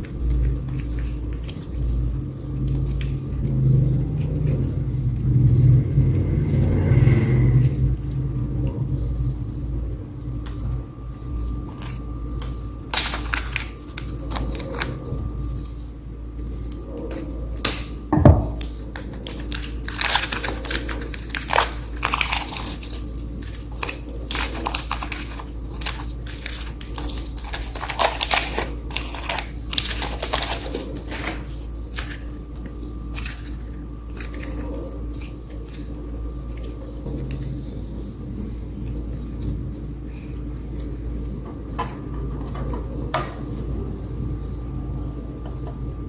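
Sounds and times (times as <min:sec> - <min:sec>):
steady low hum: 0:00.0 - 0:46.0
crackling and crunching clicks: 0:11.6 - 0:39.5.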